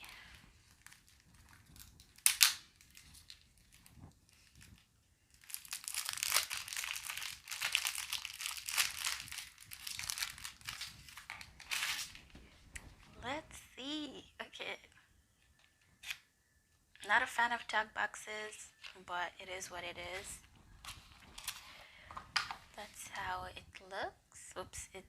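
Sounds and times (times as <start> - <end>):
plastic wrapping crinkling: 0.0 - 13.3, 20.0 - 23.2
plastic wrapping ripping: 0.6 - 12.3.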